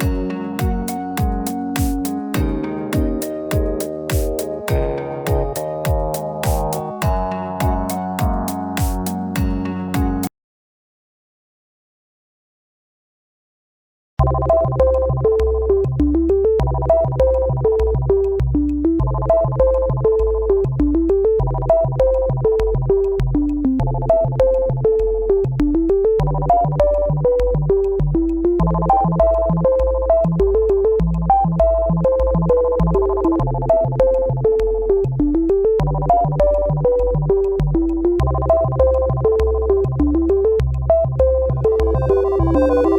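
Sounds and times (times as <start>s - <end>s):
synthesizer music with steady beat: 0.0s - 10.3s, 35.8s - 42.9s.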